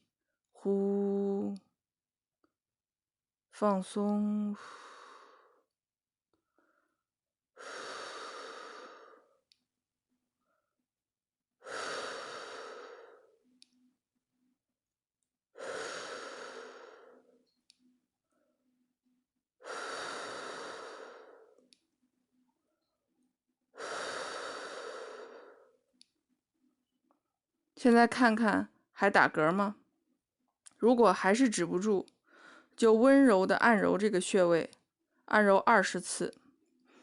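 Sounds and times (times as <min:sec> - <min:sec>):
person breathing deeply: 0:04.6 - 0:05.7, 0:07.6 - 0:09.4, 0:11.6 - 0:13.4, 0:15.5 - 0:17.4, 0:19.6 - 0:21.6, 0:23.7 - 0:25.8.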